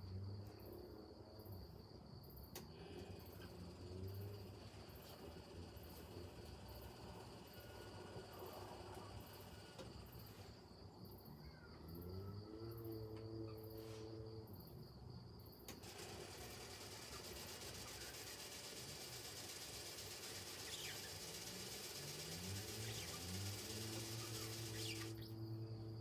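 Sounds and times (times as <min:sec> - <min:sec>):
washing machine motor whining: 0:02.6 - 0:10.7, 0:15.7 - 0:26.0.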